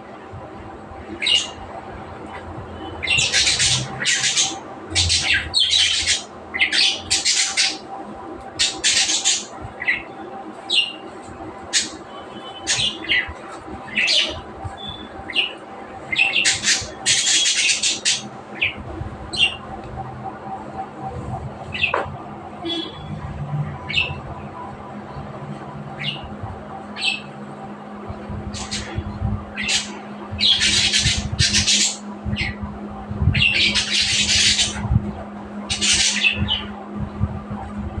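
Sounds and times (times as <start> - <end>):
steady low hum: 0.0 - 38.0
budgerigars chirping and squawking: 1.1 - 1.6, 3.0 - 7.9, 8.6 - 11.0, 11.7 - 12.0, 12.6 - 19.6, 23.9 - 24.2, 26.0 - 26.3, 27.0 - 27.3, 28.5 - 32.6, 33.3 - 34.8, 35.7 - 36.8.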